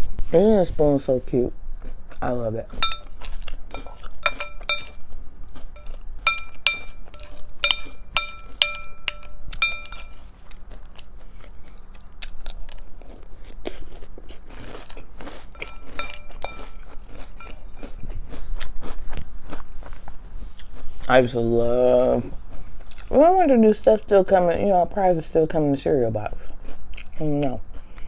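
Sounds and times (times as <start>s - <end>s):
cereal crunching while chewed: 1.7s - 21.3s, 26.4s - 28.0s
spoon clinking against bowl: 2.7s - 5.0s, 5.8s - 10.3s, 15.6s - 17.9s.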